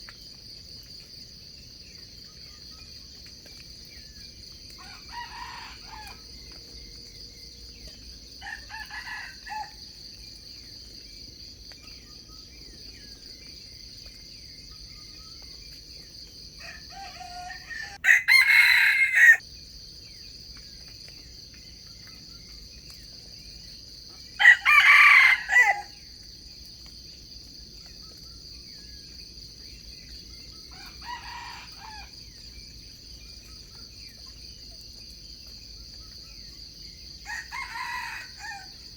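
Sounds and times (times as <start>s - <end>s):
roosters crowing: 4.8s - 6.2s, 8.4s - 9.8s, 16.6s - 19.4s, 24.4s - 26.0s, 30.7s - 32.1s, 37.2s - 38.8s
distant rooster crows: 4.8s - 6.3s, 8.4s - 9.9s, 16.6s - 19.4s, 24.4s - 26.0s, 30.7s - 32.4s, 37.2s - 38.9s.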